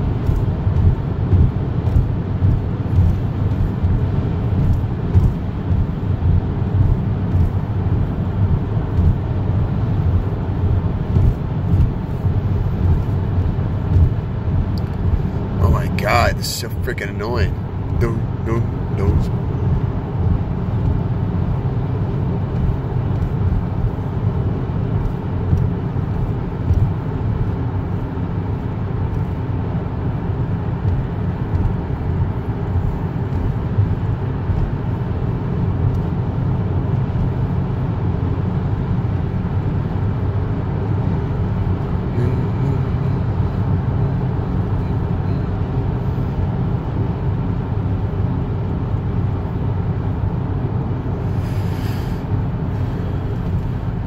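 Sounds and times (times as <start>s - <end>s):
car road and tyre noise: 0.0s - 54.0s
faint drone: 42.0s - 46.3s, 51.2s - 54.0s.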